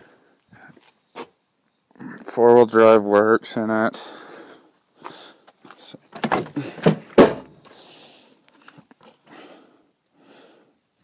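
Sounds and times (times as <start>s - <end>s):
heavy door thunk: 6.2s - 7.5s
truck door latch clicks and knocks: 6.2s - 7.5s.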